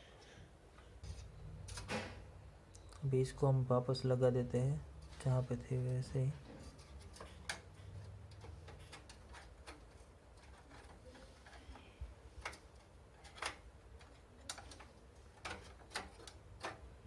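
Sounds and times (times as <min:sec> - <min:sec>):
computer case parts clicking: 0:01.0 - 0:02.3, 0:05.8 - 0:17.0.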